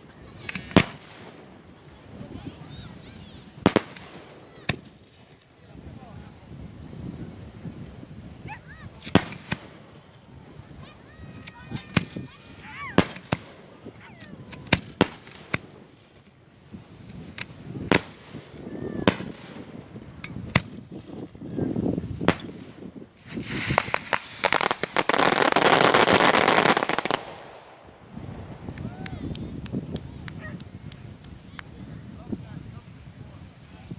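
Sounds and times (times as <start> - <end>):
fireworks bangs: 0.0 - 6.2, 7.1 - 30.6
fireworks crackling barrage: 0.0 - 33.9.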